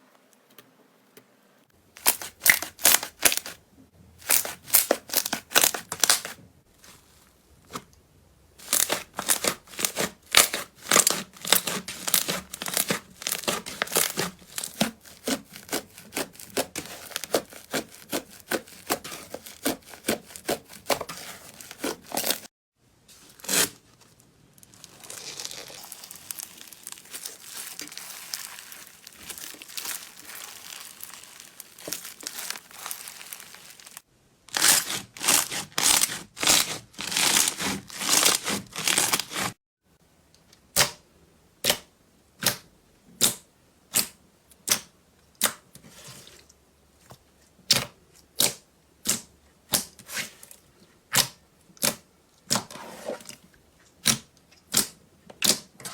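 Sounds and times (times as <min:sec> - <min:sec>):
slime crackling: 0:02.0 - 0:03.6, 0:04.2 - 0:06.4, 0:08.6 - 0:22.5, 0:24.6 - 0:39.6.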